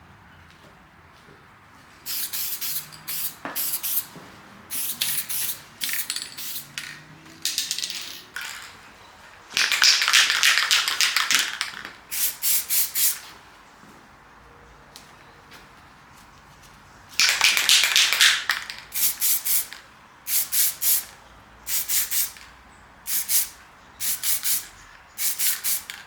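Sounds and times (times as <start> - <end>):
aerosol spray can hissing: 2.1 - 4.1, 4.7 - 6.8, 12.1 - 13.2, 17.3 - 19.7, 20.3 - 21.1, 21.7 - 22.4, 23.1 - 25.9.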